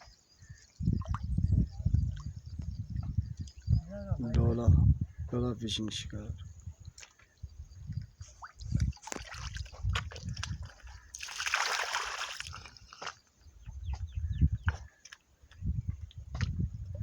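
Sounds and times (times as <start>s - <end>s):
water sloshing and splashing: 8.2s - 13.3s.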